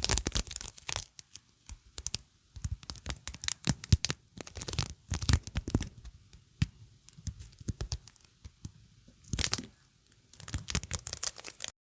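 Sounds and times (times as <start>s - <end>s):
sticky surface peeling: 9.3s - 11.7s.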